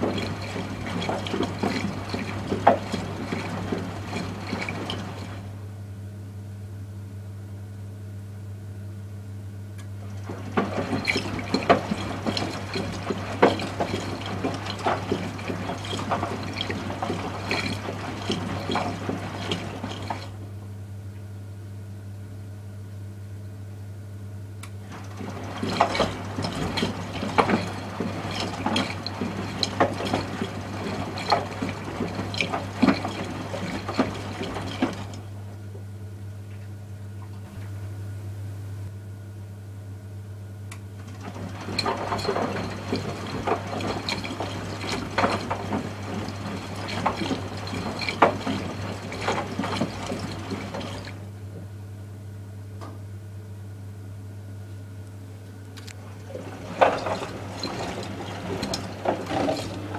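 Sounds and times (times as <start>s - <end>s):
washing machine water sloshing: 0.0s - 5.6s, 10.0s - 20.6s, 24.8s - 35.9s, 41.0s - 51.7s, 55.8s - 59.9s.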